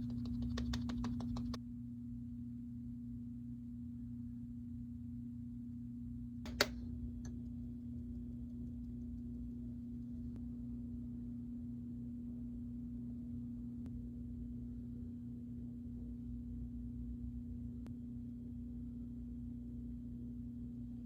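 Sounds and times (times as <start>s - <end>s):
faint ticks: 0.0s - 1.6s
steady low hum: 0.0s - 21.0s.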